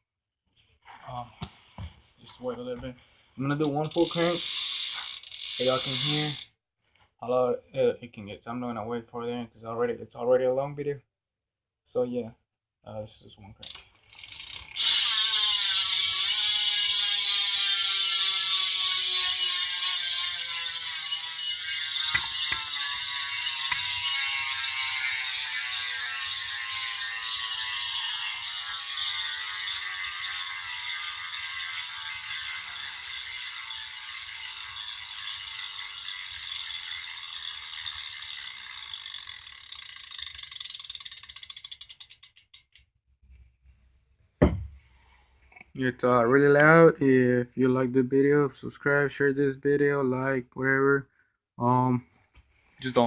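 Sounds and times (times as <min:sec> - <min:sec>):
bicycle hub pawl clicking: 0:03.5 - 0:06.5, 0:13.6 - 0:42.9
short thump: 0:44.4 - 0:44.8.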